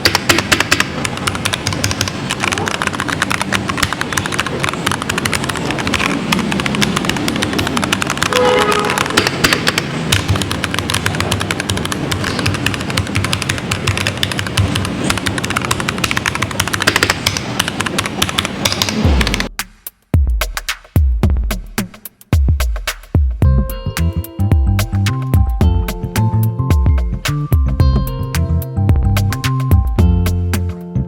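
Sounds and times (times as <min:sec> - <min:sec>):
mechanical keyboard typing: 0:00.0 - 0:19.5.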